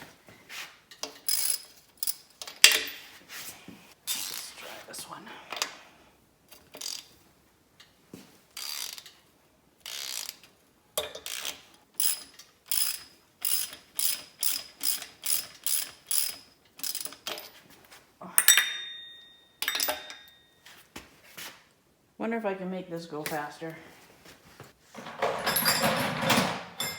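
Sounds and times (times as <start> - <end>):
socket ratchet clicking: 11.0 - 17.4
sharp metallic clink: 18.4 - 20.5.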